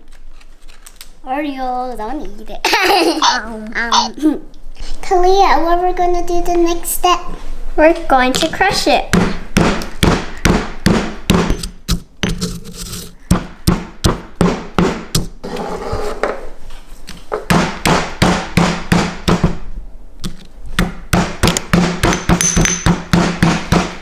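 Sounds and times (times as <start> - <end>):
cookies being pounded: 8.4 - 15.4, 17.3 - 24.0.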